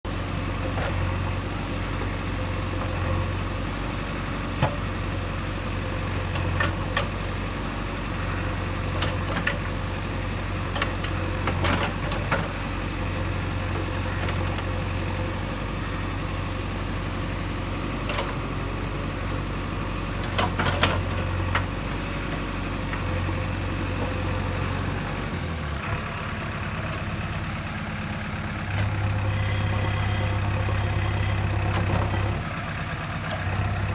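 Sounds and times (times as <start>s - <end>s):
diesel engine running: 0.1s - 33.9s.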